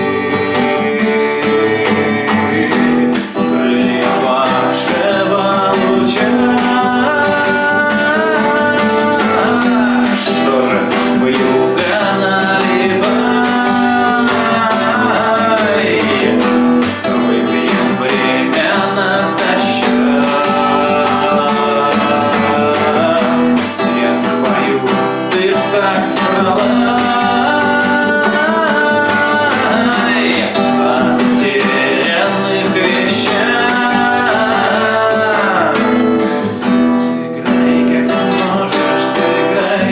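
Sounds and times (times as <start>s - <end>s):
acoustic guitar strumming: 0.0s - 39.9s
person singing: 0.0s - 39.9s.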